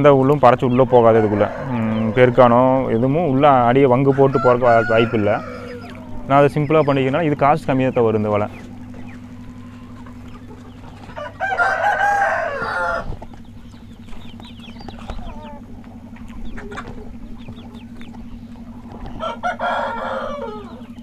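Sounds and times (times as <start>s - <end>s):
chickens clucking and chirping: 0.0s - 21.0s
steady low hum: 0.0s - 21.0s
rooster crowing: 0.7s - 2.6s, 3.4s - 6.6s, 11.0s - 13.2s, 18.8s - 21.0s.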